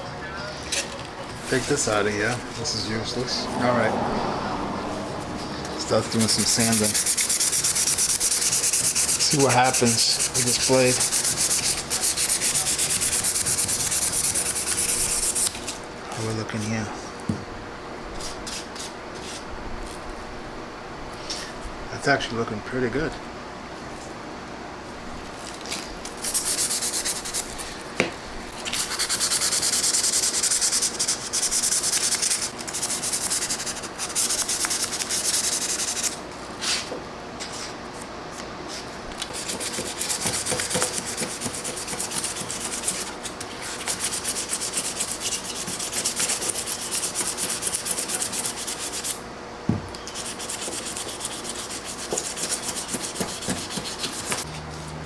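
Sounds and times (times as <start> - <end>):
hand sanding metal blade: 5.8 - 15.8, 26.2 - 27.6, 28.6 - 36.8, 39.2 - 49.2, 50.1 - 54.5.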